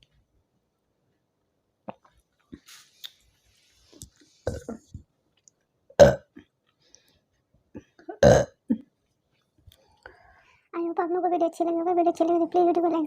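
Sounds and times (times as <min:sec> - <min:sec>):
woman burping: 0:04.5 - 0:04.9, 0:05.9 - 0:06.4, 0:07.8 - 0:08.9.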